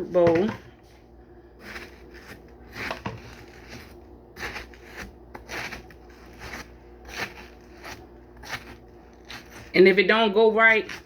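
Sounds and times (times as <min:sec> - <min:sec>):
watermelon being cut in a bowl: 0:01.6 - 0:11.0.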